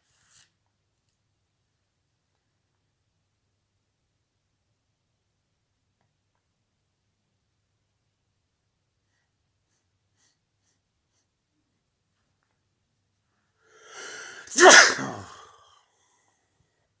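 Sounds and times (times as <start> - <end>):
person sneezing: 13.8 - 15.7.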